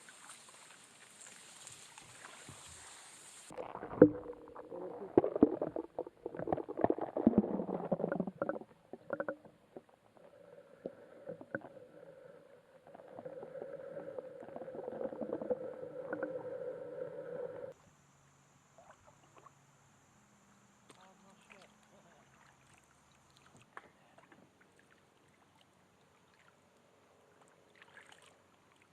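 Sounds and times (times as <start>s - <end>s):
water splashing: 0.0s - 17.7s
steady hum: 3.5s - 18.4s.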